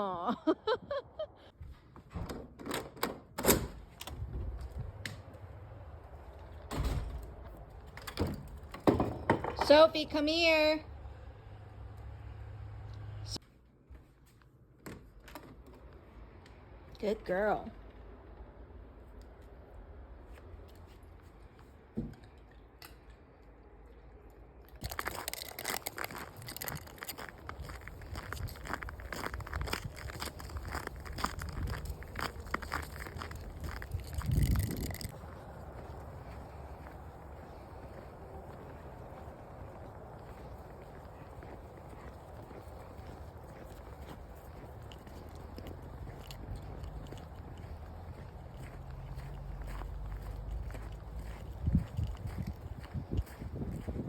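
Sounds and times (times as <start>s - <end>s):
footsteps crunching in snow: 24.8s - 54.0s
scuffing in snow: 25.5s - 54.0s.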